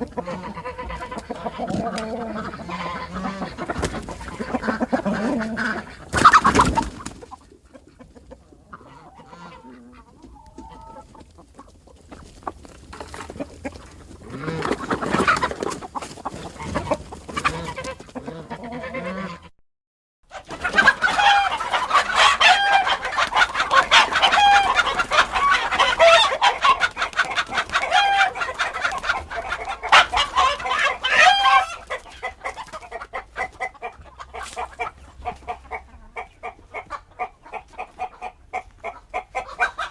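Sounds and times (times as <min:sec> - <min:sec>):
hens clucking and squawking: 0:00.0 - 0:19.5, 0:20.3 - 0:39.9.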